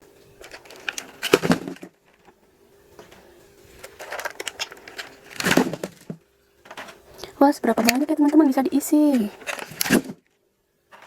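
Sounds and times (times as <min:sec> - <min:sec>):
plastic clattering: 0:00.4 - 0:02.4, 0:03.0 - 0:07.0, 0:07.7 - 0:10.2.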